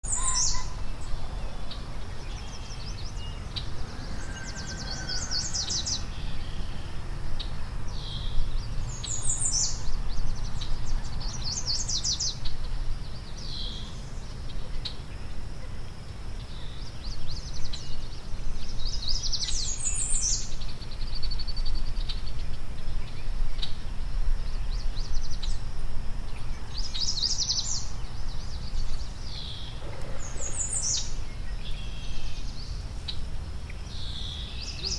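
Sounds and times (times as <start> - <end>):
songbird trilling: 0.0 - 6.9, 26.6 - 34.9.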